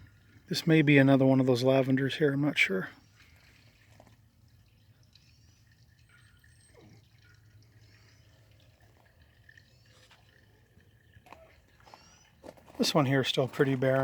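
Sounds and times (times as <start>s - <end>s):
faint bird chirping: 4.6s - 12.4s.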